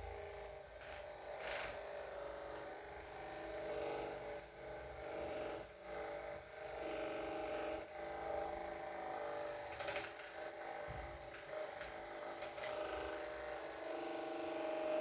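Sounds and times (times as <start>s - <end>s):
percussion massager motor hum: 0.0s - 15.0s.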